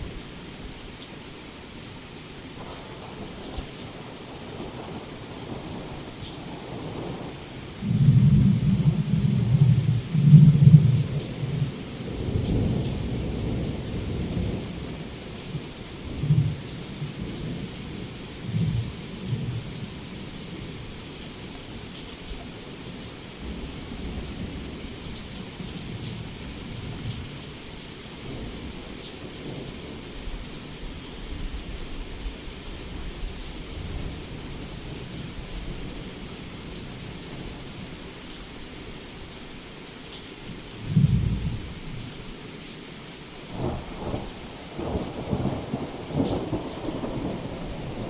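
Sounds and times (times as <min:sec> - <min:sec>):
heavy rain: 0:00.0 - 0:48.0
thunder rumbling: 0:06.7 - 0:15.2, 0:43.5 - 0:48.0.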